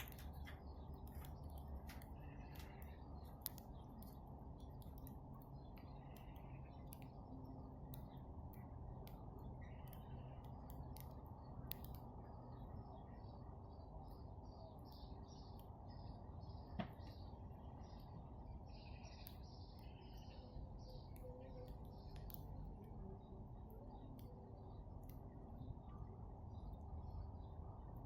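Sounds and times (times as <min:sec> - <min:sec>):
low steady rumble: 0:00.0 - 0:28.0
sharp clicks: 0:07.8 - 0:12.1
faint bird calls: 0:14.1 - 0:24.9.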